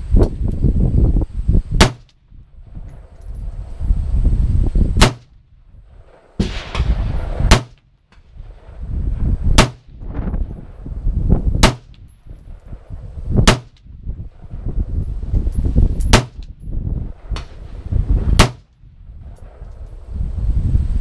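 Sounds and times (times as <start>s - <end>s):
low rumbling noise: 0.0s - 21.0s
rifle shots: 1.8s - 2.1s, 5.0s - 5.3s, 6.0s - 7.9s, 9.6s - 9.9s, 11.6s - 12.0s, 13.4s - 13.8s, 18.3s - 18.7s.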